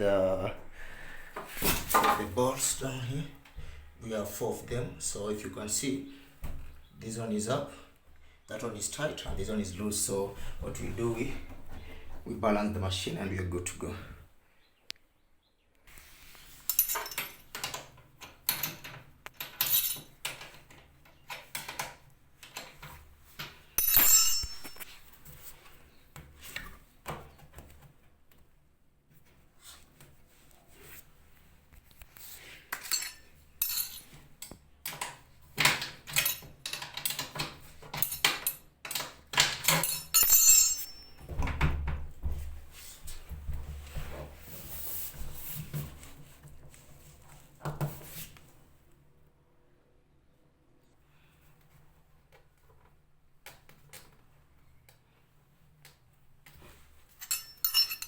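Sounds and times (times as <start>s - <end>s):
metal tool clinking: 16.7s - 17.8s, 18.5s - 20.2s, 23.8s - 25.0s, 32.7s - 34.2s, 36.1s - 37.3s, 37.9s - 41.2s, 57.2s - 58.0s.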